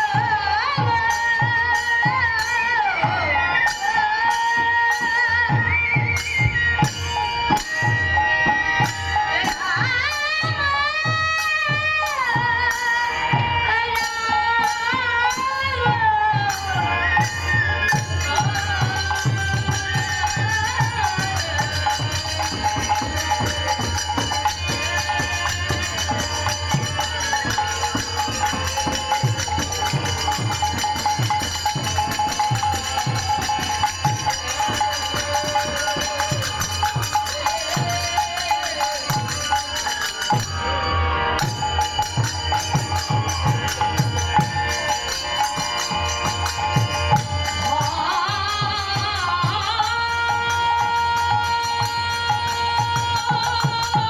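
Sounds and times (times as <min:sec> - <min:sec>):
jingling hand cymbals: 0:00.0 - 0:54.0.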